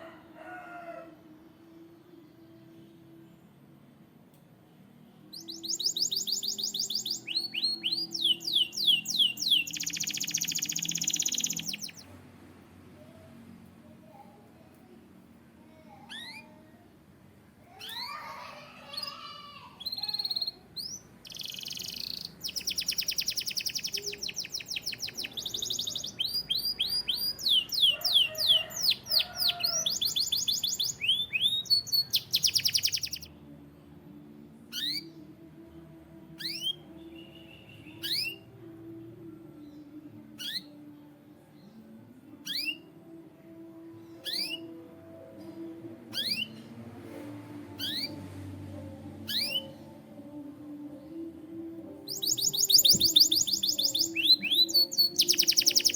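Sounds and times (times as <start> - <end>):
canary singing trills: 5.3 - 12.1, 15.7 - 16.7, 17.7 - 33.3, 34.6 - 35.3, 36.3 - 38.6, 39.8 - 41.0, 42.4 - 43.0, 43.9 - 45.2, 46.1 - 46.7, 47.8 - 48.3, 49.2 - 49.9, 52.0 - 55.9
canary call notes: 5.4 - 12.0, 52.1 - 55.9.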